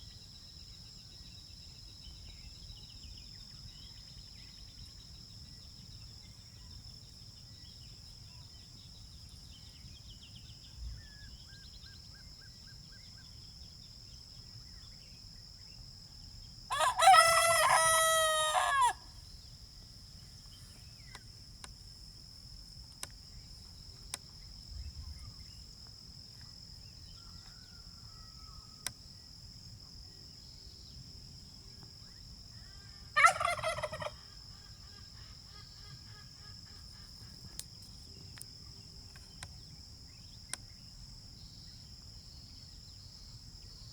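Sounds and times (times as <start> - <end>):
insect drone: 0.0 - 43.9
turkey gobble: 16.7 - 19.0, 33.1 - 34.7
rooster crowing: 16.7 - 19.1, 27.2 - 28.8, 33.1 - 34.2.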